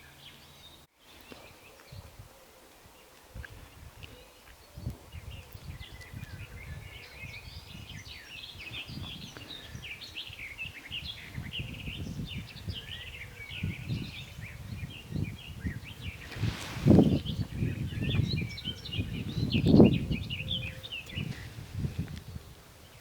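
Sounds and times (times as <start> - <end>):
songbirds chirping: 0.0 - 23.0
low microphone rumble: 4.8 - 22.6.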